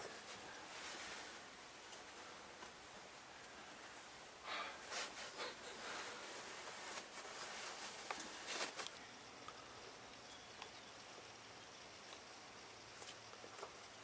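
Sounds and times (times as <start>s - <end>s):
soft rustling and scuffing: 0.1s - 2.8s, 4.9s - 9.0s.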